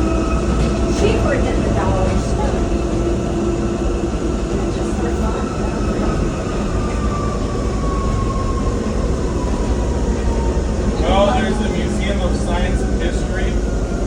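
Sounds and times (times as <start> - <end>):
monorail car rumble and whine: 0.0 - 14.0.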